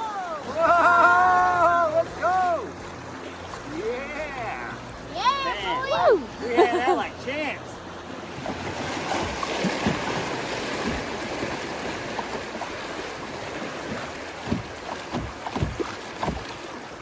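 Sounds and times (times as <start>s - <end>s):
river water rushing: 0.0s - 17.0s
low thumps: 14.4s - 16.6s.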